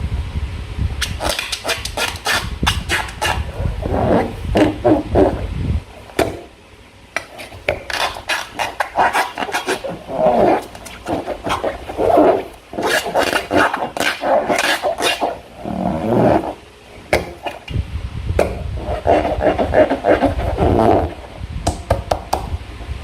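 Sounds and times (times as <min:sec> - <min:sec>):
slime squelching: 0:01.0 - 0:06.5, 0:07.2 - 0:16.6
low handling rumble: 0:03.4 - 0:06.9.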